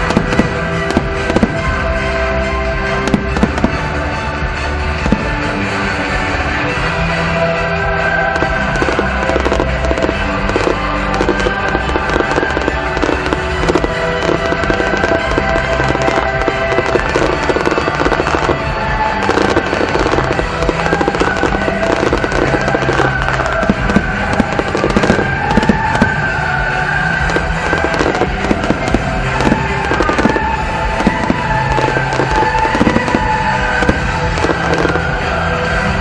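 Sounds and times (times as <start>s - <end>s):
fireworks bangs and crackles: 0.0s - 36.0s
music playing: 0.0s - 36.0s.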